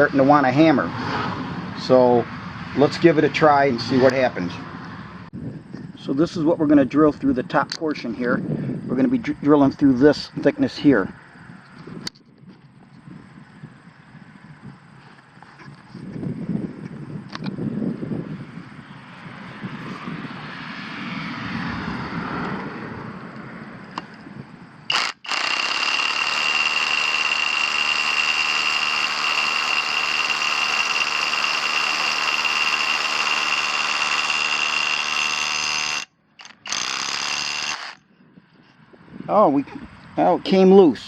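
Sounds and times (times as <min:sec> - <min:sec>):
rotary hammer drilling concrete: 0:24.9 - 0:38.0.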